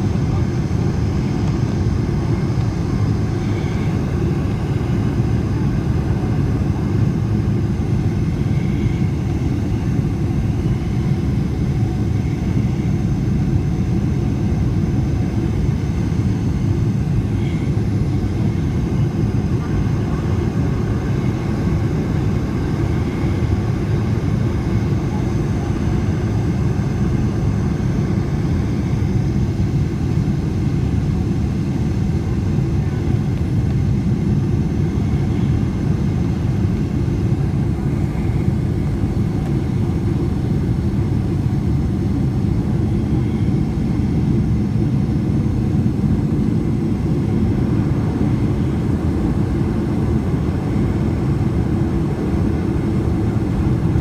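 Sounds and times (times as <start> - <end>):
airplane cabin engine rumble: 0.0 - 54.0.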